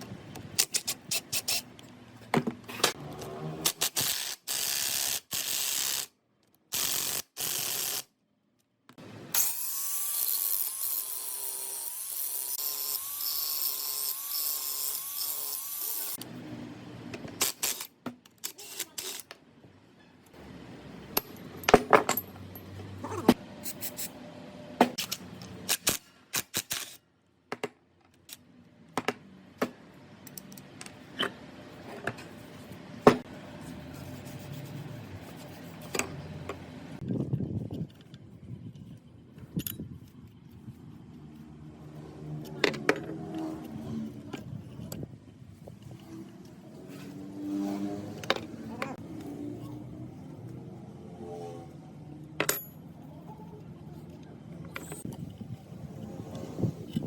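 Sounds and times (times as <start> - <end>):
tools clicking and knocking on metal: 21.1 - 22.9.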